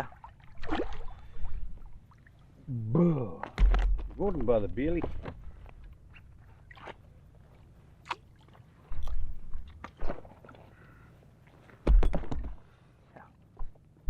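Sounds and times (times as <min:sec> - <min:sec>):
fishing gear knocks and clicks: 0:03.4 - 0:05.4.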